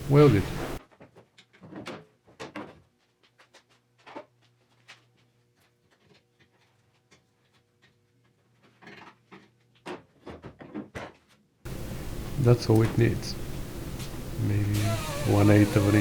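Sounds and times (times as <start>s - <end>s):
low steady hum: 11.7s - 16.0s
soft rasping: 11.7s - 16.0s.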